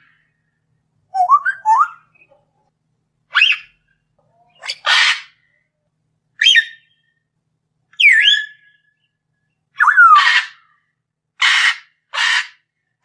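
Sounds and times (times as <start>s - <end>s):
lovebird squawks and whistles: 1.2s - 2.3s, 3.3s - 3.8s, 6.4s - 7.0s, 8.0s - 8.8s, 9.8s - 10.6s.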